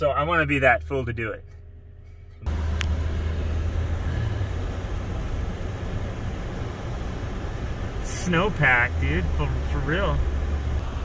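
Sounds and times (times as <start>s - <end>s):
car driving on slushy road: 2.4s - 11.0s.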